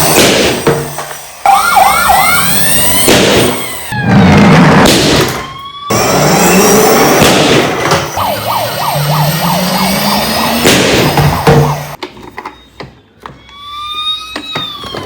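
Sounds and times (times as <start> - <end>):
fast yelping siren: 1.4 - 4.3, 7.9 - 12.0
toy sirens: 1.4 - 4.6, 5.3 - 7.2, 7.8 - 12.0, 13.4 - 15.0.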